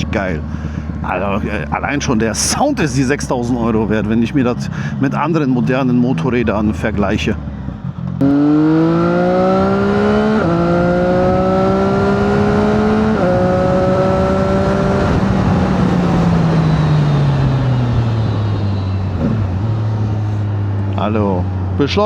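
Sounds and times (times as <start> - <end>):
motorcycle engine accelerating: 0.0 - 22.0
wind noise: 9.2 - 20.3.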